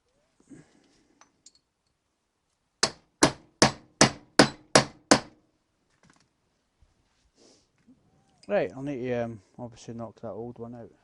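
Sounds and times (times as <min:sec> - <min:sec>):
hammer striking metal: 0:02.8 - 0:05.3.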